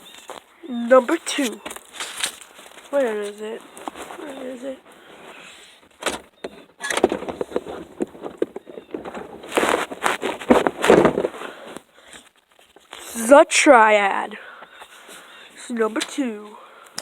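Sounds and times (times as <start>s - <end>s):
hard plastic clattering and scraping: 5.1s - 13.1s.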